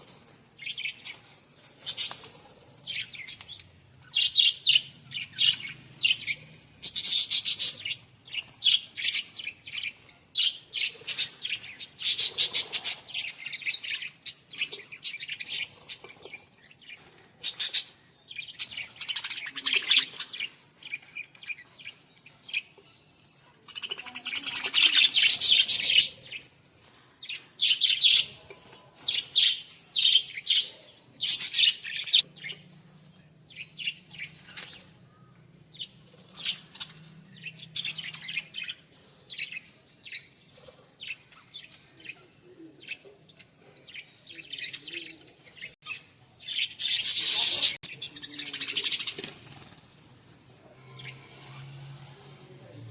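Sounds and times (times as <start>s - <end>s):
budgerigars chirping: 2.9s - 20.5s, 44.6s - 49.4s.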